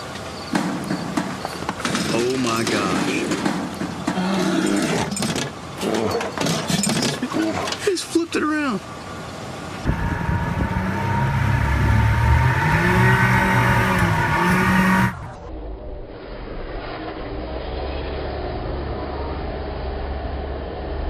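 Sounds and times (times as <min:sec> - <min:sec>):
low engine rumble: 0:07.1 - 0:21.0
engine revving: 0:09.8 - 0:15.5.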